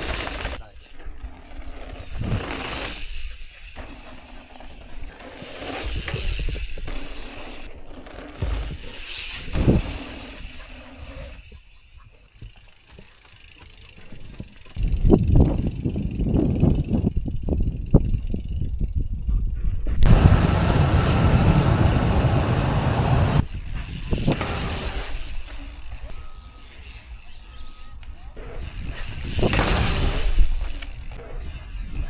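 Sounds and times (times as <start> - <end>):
rushing ride noise: 20.1 - 23.4.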